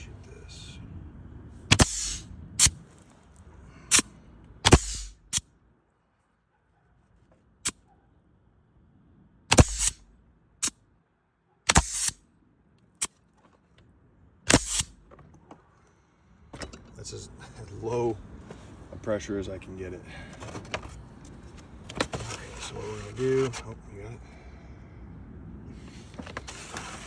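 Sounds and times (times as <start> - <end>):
exhaust air hiss: 1.7 - 2.8, 3.7 - 5.4, 9.5 - 10.0, 11.7 - 12.2, 14.5 - 15.0
nail gun firing: 1.7 - 2.8, 3.9 - 5.4, 9.5 - 10.0, 11.7 - 12.2, 14.5 - 15.0.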